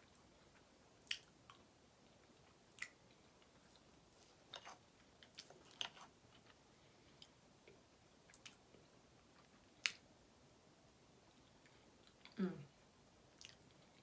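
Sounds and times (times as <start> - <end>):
chewing with wet mouth clicks: 1.0 - 1.6, 2.4 - 3.0, 13.4 - 13.8.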